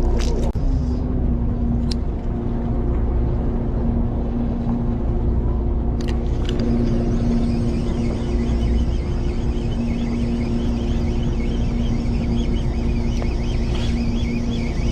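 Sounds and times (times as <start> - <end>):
boat engine running: 0.6 - 14.9.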